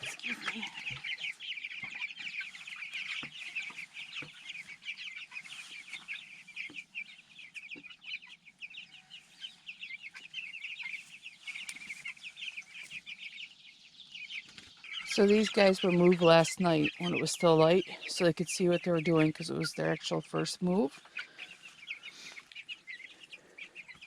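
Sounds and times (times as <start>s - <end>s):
chicks peeping: 0.0s - 24.0s.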